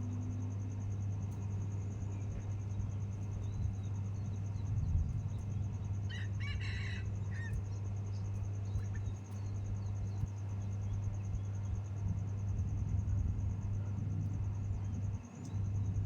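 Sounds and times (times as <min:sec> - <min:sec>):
low hum and faint hiss: 0:00.0 - 0:16.0
rooster crowing: 0:06.1 - 0:07.7.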